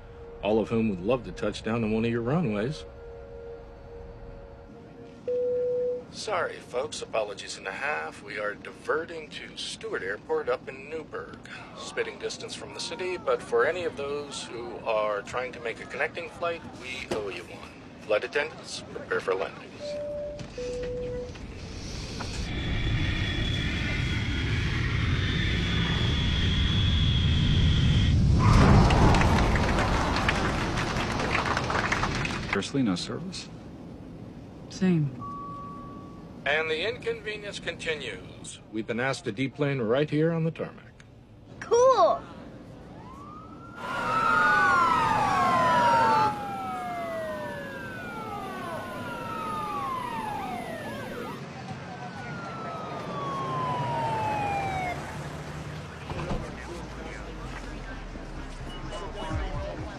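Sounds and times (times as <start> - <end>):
emergency sirens wailing: 0.0 - 5.2, 42.7 - 59.9
high jet engine whine: 0.0 - 5.3, 19.0 - 32.6, 42.6 - 59.9
jet airliner low rumble: 0.0 - 5.3, 20.6 - 32.6, 42.6 - 59.9
rush of noise: 21.5 - 32.4, 43.8 - 51.5.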